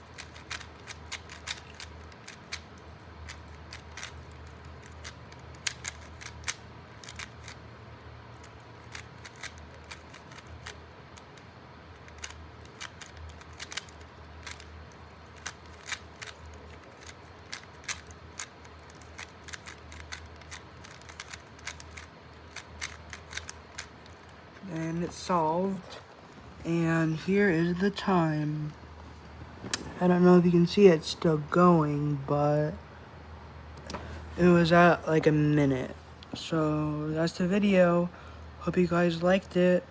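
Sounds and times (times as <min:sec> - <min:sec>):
faint low hum: 0:00.0 - 0:39.9
puzzle cube clicking: 0:00.1 - 0:07.6, 0:08.3 - 0:24.3.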